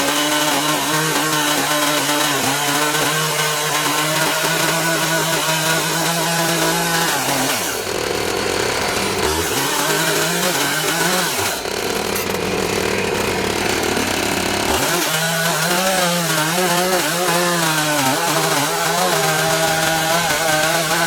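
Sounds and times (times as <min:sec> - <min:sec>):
chainsaw milling a log: 0:00.0 - 0:21.0.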